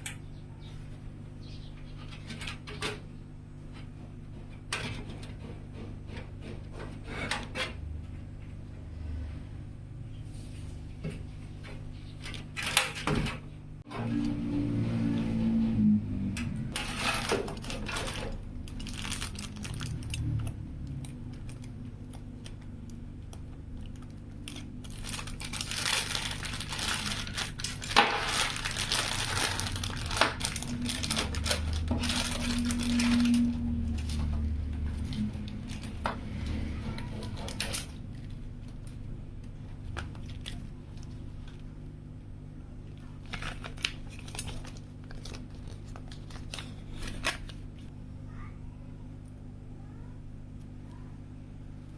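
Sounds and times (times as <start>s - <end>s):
packaging crinkling and tearing: 16.8s - 23.0s, 23.7s - 34.3s, 35.0s - 36.1s, 37.1s - 38.4s, 43.1s - 47.9s.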